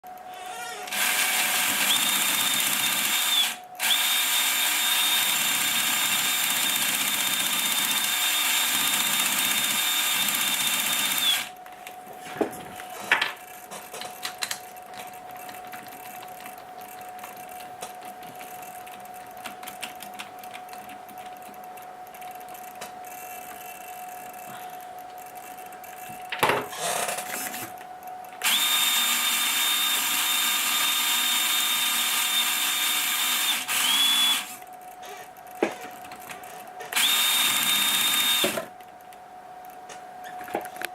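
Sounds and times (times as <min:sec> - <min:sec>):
electric motor whine: 0:00.1 - 0:13.6, 0:22.8 - 0:35.9, 0:36.8 - 0:38.7.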